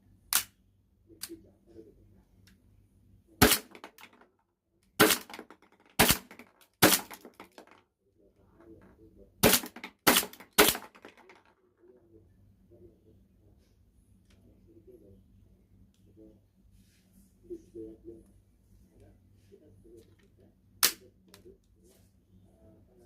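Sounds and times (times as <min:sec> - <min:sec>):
airsoft pistol shots: 0:03.4 - 0:04.0, 0:05.0 - 0:05.4, 0:06.0 - 0:07.3, 0:09.4 - 0:11.0.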